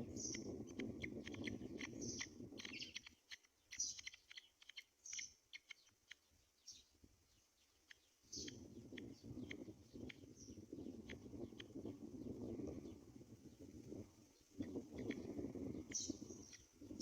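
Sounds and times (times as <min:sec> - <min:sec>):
high bird chirps: 0:00.0 - 0:07.0, 0:07.6 - 0:12.0, 0:15.0 - 0:16.8
small clicks and rustles: 0:02.6 - 0:06.3.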